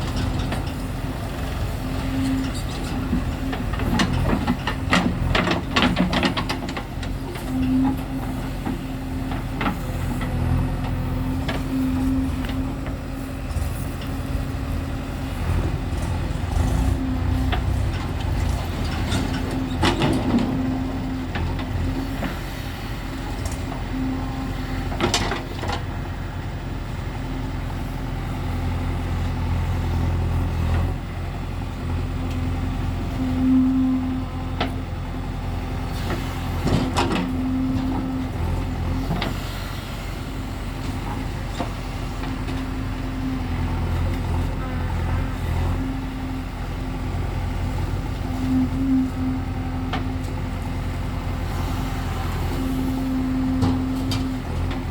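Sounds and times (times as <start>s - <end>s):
diesel machinery running: 0.0s - 54.9s.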